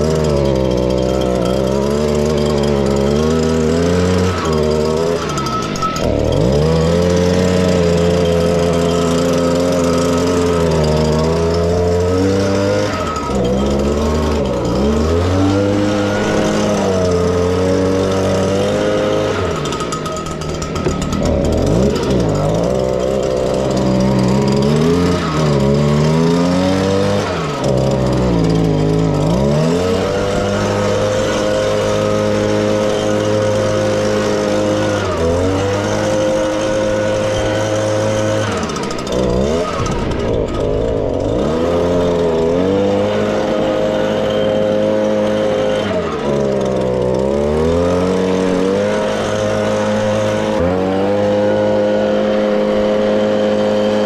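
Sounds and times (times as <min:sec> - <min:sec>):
leaf blower engine running: 0:00.0 - 0:54.0.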